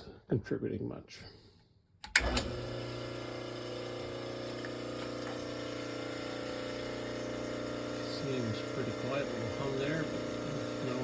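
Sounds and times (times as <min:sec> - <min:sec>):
electric motor humming: 0:02.2 - 0:11.0.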